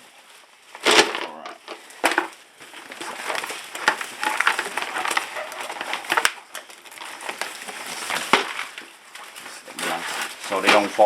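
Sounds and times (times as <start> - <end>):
rocks clattering into pot: 0.8 - 8.9.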